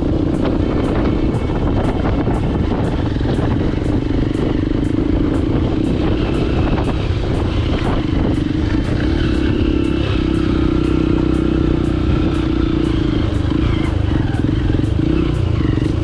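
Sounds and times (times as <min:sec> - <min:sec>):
background music with beat: 0:00.0 - 0:16.0
motorcycle engine running: 0:00.0 - 0:16.0.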